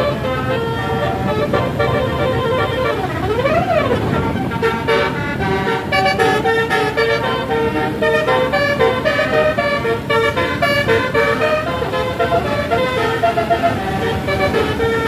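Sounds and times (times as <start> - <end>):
bus engine and road rumble: 0.0 - 15.0
bus horn playing melody: 0.0 - 15.0.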